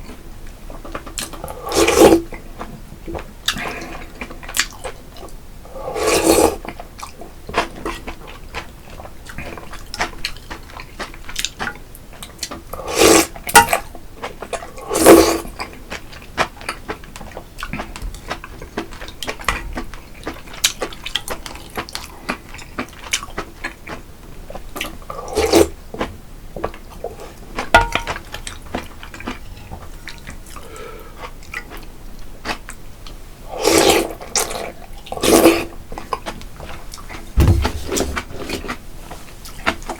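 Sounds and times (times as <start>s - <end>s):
loud slurps: 5.9s - 6.6s, 12.9s - 13.3s, 25.3s - 25.7s
wet chewing and mouth clicks: 6.3s - 29.5s.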